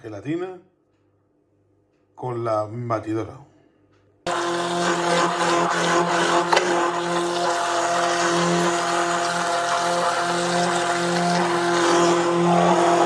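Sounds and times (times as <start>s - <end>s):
electric blender motor running: 4.3s - 13.0s.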